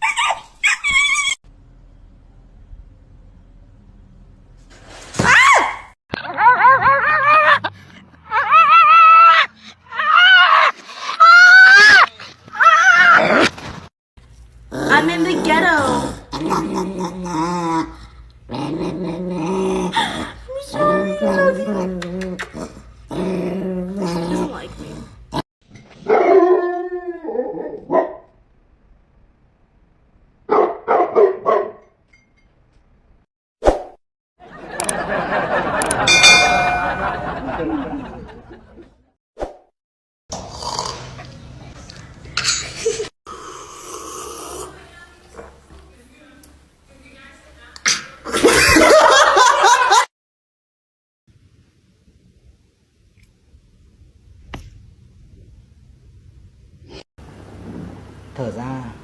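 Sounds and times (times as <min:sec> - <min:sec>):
dog howling and whining: 0:05.6 - 0:07.6, 0:08.2 - 0:12.0
dog barking: 0:26.0 - 0:26.6, 0:27.9 - 0:28.3, 0:30.5 - 0:31.8.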